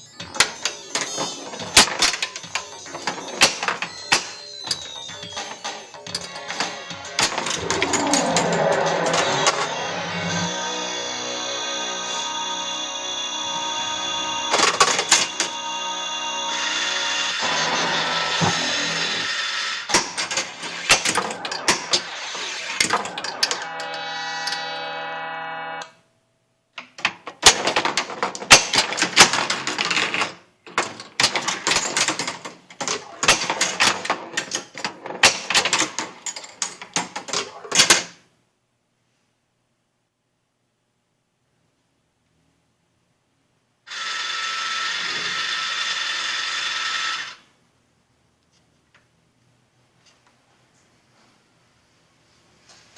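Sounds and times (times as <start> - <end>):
electronic tone: 0.0 - 26.0.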